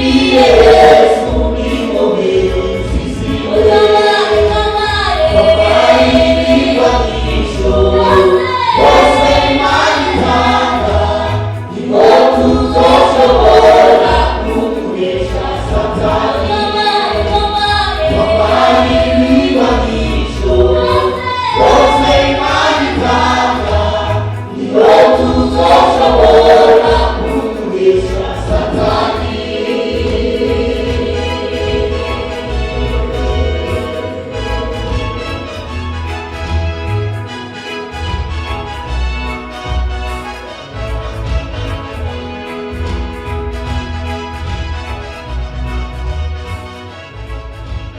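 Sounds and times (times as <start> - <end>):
low bass accompaniment: 0.0 - 37.3
church choir singing: 0.0 - 47.2.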